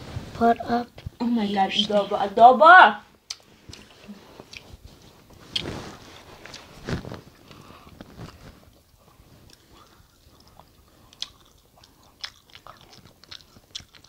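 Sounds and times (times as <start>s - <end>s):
chewing and biting: 7.4s - 14.0s.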